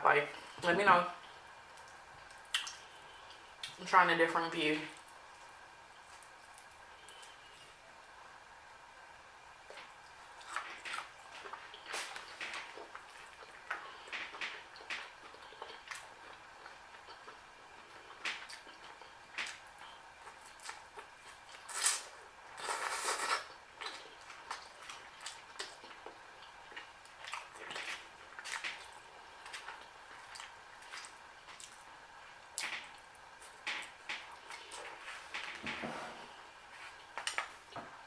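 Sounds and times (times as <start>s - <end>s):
wet mouth smacks: 2.5s - 2.8s
person chewing noodles: 9.6s - 31.9s.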